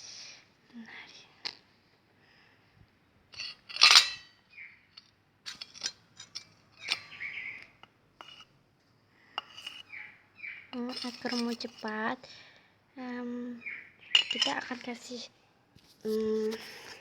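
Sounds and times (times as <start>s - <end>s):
containers and utensils clinking: 3.4s - 4.2s, 10.8s - 12.0s, 14.2s - 14.9s
ringing clink: 3.4s - 4.3s.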